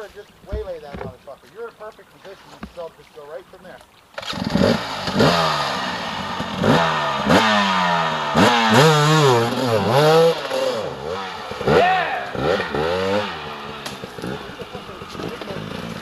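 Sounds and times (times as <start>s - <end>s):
dirt bike engine revving: 4.2s - 16.0s.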